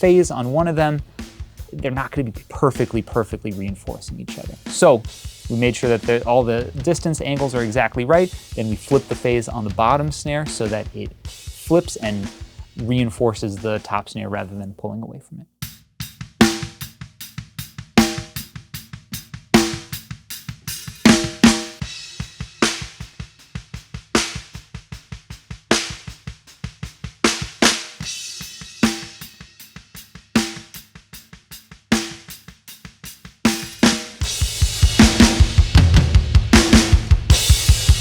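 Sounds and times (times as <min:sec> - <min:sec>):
fast low drum strikes: 0:00.0 - 0:14.0, 0:33.8 - 0:38.0.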